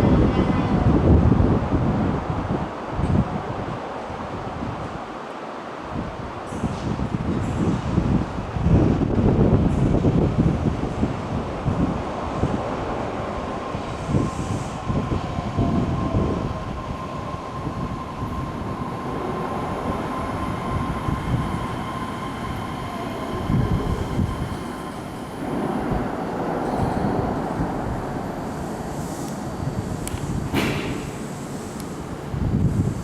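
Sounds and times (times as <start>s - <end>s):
electric train slowing: 11.9s - 33.0s.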